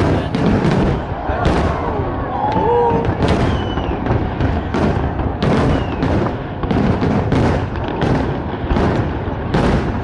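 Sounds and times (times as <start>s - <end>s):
fireworks bursting with loud bangs: 0.0s - 10.0s
low rumble of echoing booms: 0.0s - 10.0s.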